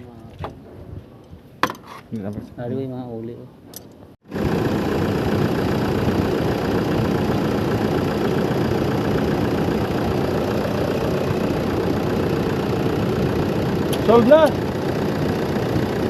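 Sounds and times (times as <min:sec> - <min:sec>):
engine idling: 0:04.3 - 0:16.0.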